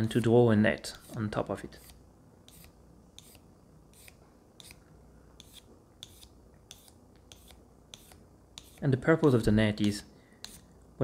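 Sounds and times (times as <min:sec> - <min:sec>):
pencil scratching on stone: 0:05.4 - 0:08.8.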